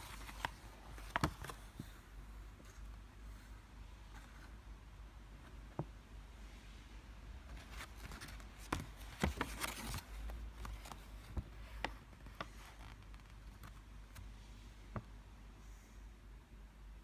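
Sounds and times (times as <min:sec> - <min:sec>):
packaging rustle: 0:00.0 - 0:01.8, 0:07.6 - 0:13.8.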